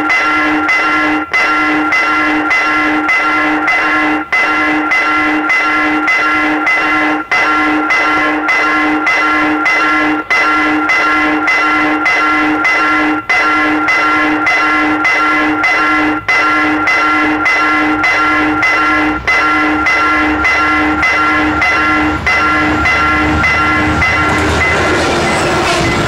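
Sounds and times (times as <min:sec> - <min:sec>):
level crossing warning bell: 0:00.0 - 0:26.0.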